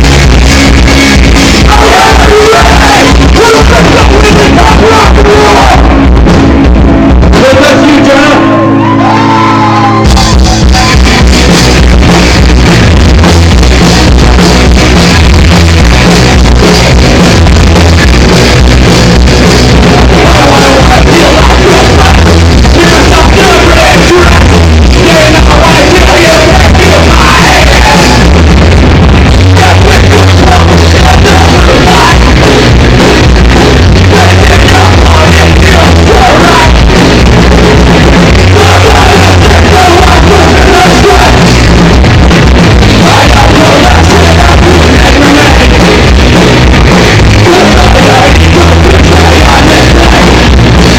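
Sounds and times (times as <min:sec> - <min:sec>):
loud rock music: 0:00.0 - 0:50.9
shouted vocals: 0:07.4 - 0:11.0, 0:38.2 - 0:41.5.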